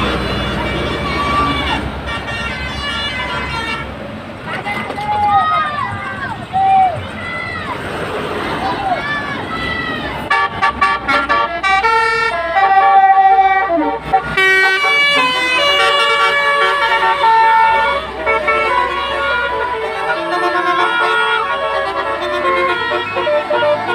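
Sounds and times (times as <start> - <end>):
musical bus air horn: 0.0 - 4.5, 10.2 - 23.9.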